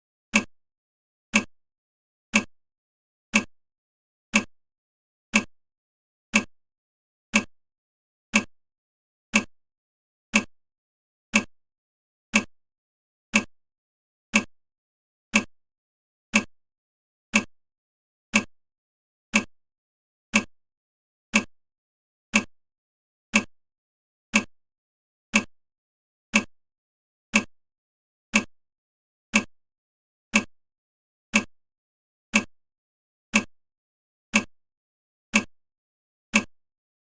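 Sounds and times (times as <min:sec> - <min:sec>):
clock ticking: 0:00.3 - 0:00.5, 0:01.3 - 0:01.5, 0:02.3 - 0:02.5, 0:03.3 - 0:03.5, 0:04.3 - 0:04.5, 0:05.3 - 0:05.5, 0:06.3 - 0:06.5, 0:07.3 - 0:07.5, 0:08.3 - 0:08.5, 0:09.3 - 0:09.5, 0:10.3 - 0:10.5, 0:11.3 - 0:11.5, 0:12.3 - 0:12.5, 0:13.3 - 0:13.5, 0:14.3 - 0:14.5, 0:15.3 - 0:15.5, 0:16.3 - 0:16.5, 0:17.3 - 0:17.5, 0:18.3 - 0:18.5, 0:19.3 - 0:19.5, 0:20.3 - 0:20.5, 0:21.3 - 0:21.5, 0:22.3 - 0:22.5, 0:23.3 - 0:23.5, 0:24.3 - 0:24.5, 0:25.3 - 0:25.5, 0:26.3 - 0:26.5, 0:27.3 - 0:27.5, 0:28.3 - 0:28.5, 0:29.3 - 0:29.5, 0:30.3 - 0:30.5, 0:31.3 - 0:31.5, 0:32.3 - 0:32.5, 0:33.3 - 0:33.5, 0:34.3 - 0:34.5, 0:35.3 - 0:35.5, 0:36.3 - 0:36.5.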